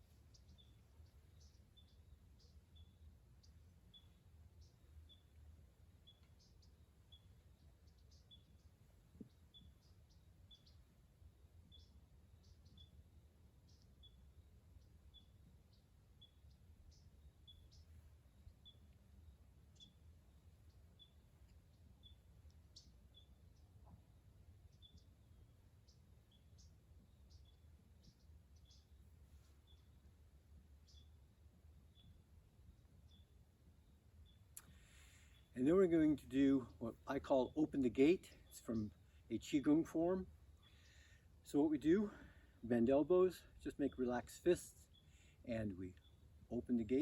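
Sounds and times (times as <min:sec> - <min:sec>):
faint ticks: 0:34.3 - 0:35.2.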